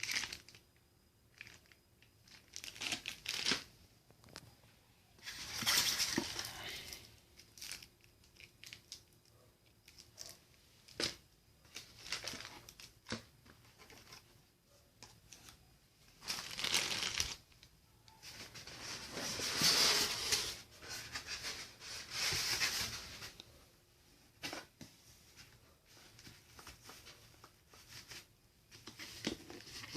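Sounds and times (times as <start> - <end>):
packaging tearing and crumpling: 0.0 - 0.6, 1.3 - 3.7, 16.2 - 17.5.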